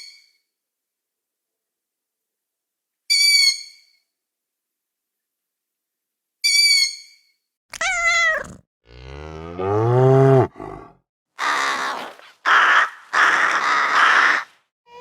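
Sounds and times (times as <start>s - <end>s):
cow mooing: 8.9s - 11.0s
harsh roars: 8.9s - 14.4s
high falling animal call: 9.6s - 14.5s.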